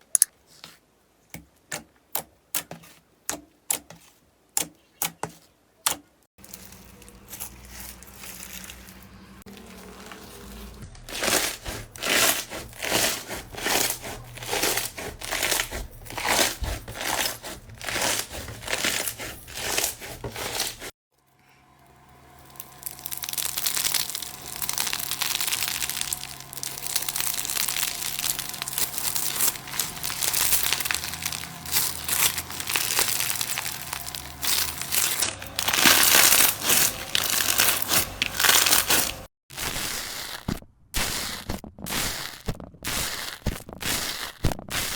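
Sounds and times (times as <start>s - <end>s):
slime squished by hand: 22.5s - 44.9s.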